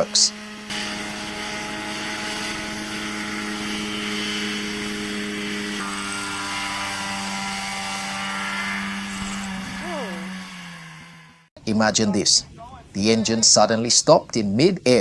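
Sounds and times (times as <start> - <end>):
model helicopter engine and rotor: 0.0 - 11.5.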